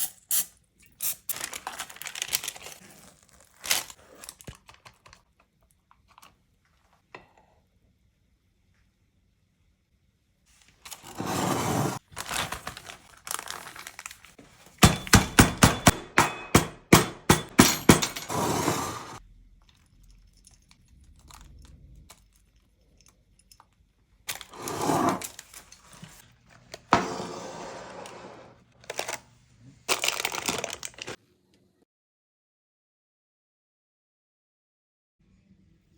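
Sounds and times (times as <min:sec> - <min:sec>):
rustling and scraping: 0:10.6 - 0:14.8, 0:17.9 - 0:19.2, 0:24.3 - 0:29.1.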